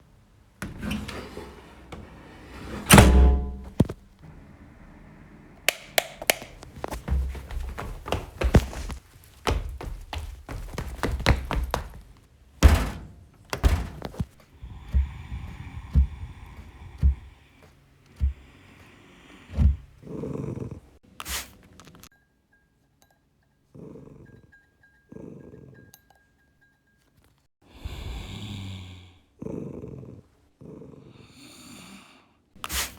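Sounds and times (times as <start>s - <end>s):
knocks and thuds: 2.9s - 4.0s, 6.2s - 17.4s, 19.6s - 20.0s
breathy snorts and growly exhales: 18.2s - 21.0s, 27.7s - 32.3s.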